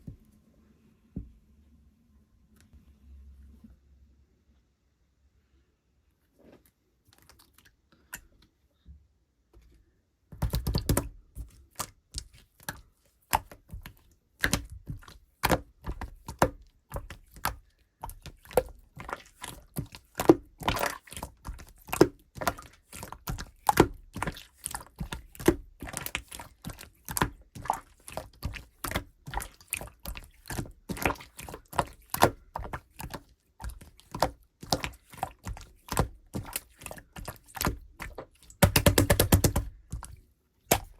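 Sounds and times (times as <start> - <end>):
slime squished in hands: 11.7 - 40.9.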